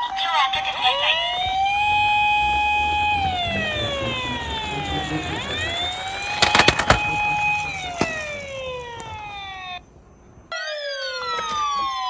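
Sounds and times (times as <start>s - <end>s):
toy siren wailing: 0.0s - 9.8s, 10.5s - 12.0s
low rumble of toy rolling: 1.4s - 10.1s.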